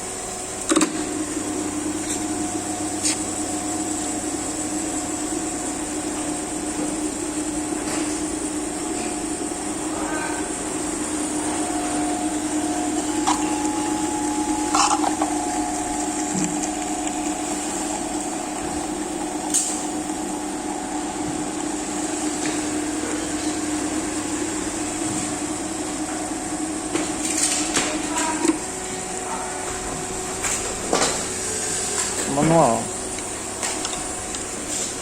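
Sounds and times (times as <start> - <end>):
boring machine humming: 0.0 - 35.0.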